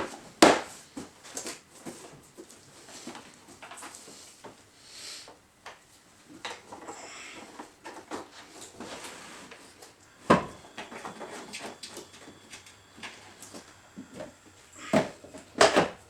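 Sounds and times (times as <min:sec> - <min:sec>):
pump parts clicking and knocking: 0:14.9 - 0:16.0.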